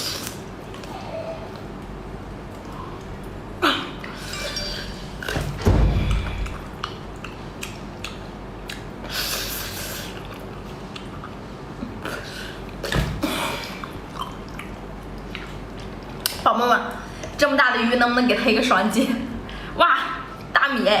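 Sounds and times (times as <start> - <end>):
thump: 5.4 - 6.7
wet chewing and squishing: 6.4 - 9.1, 10.0 - 13.0, 13.7 - 16.4.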